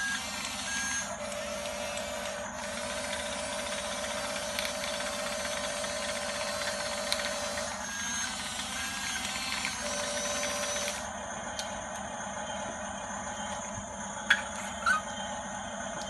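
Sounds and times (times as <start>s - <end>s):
toy motor and gears whirring: 0.0s - 11.1s.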